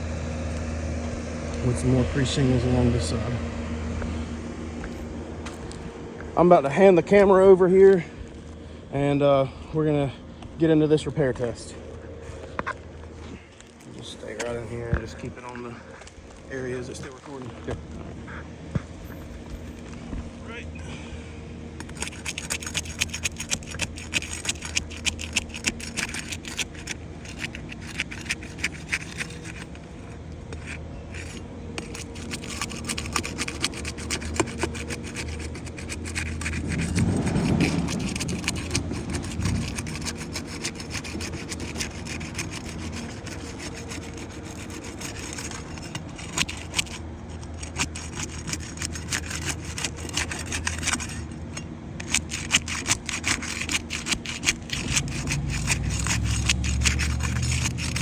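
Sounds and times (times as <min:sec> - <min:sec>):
shingles scraping and crackling: 0:11.4 - 0:20.4, 0:21.8 - 0:58.0.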